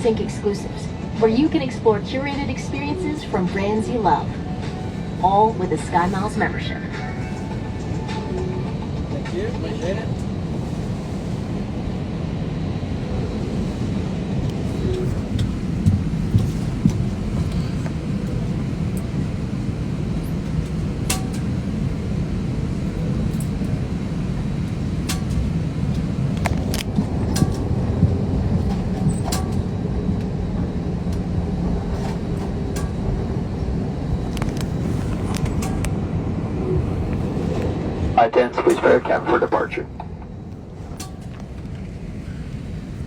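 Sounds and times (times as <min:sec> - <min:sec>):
airliner cabin air system rumble: 0:00.0 - 0:43.0.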